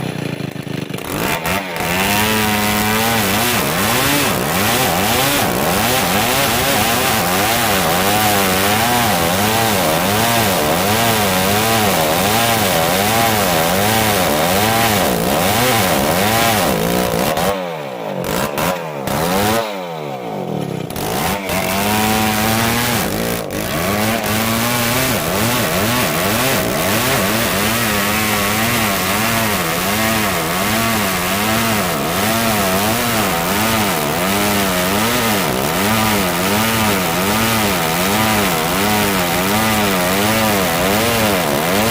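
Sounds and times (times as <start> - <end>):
chainsaw cutting wood: 0.0 - 41.9.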